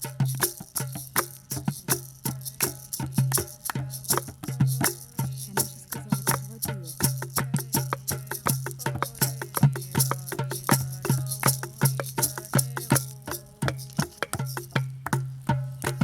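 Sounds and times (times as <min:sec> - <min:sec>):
shaker-like percussion ticking: 0:00.0 - 0:16.0.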